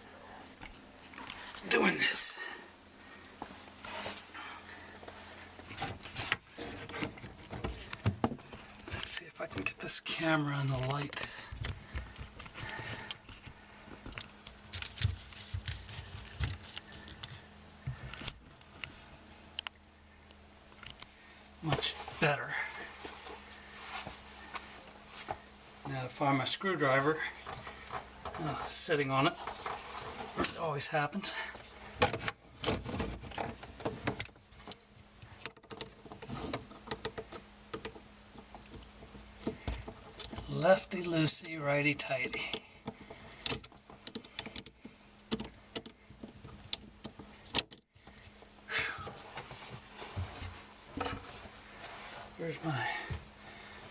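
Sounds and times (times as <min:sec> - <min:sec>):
faint steady hum: 0:00.0 - 0:53.9.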